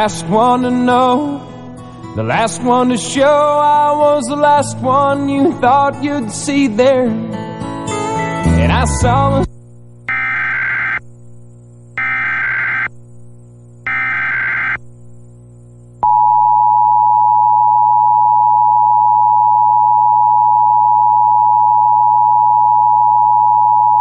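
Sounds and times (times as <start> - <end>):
buzzing data squawks: 10.0 - 11.1, 12.0 - 13.0, 13.8 - 14.8
steady two-tone alert tone: 10.1 - 11.0, 12.0 - 12.9, 13.9 - 14.8.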